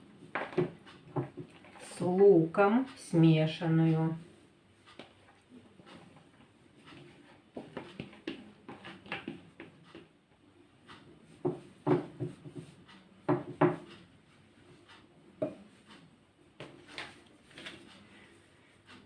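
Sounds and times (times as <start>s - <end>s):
utensil knocking and scraping dish: 0.3s - 1.8s, 11.4s - 13.9s.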